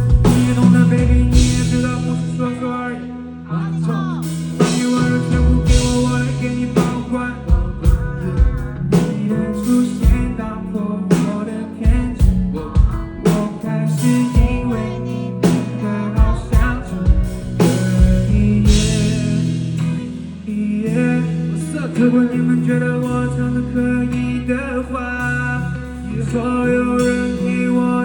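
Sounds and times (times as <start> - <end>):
drum kit beat: 0.0 - 2.6, 3.9 - 21.7
bass and electric guitar chords: 0.0 - 28.0
person singing: 0.0 - 28.0.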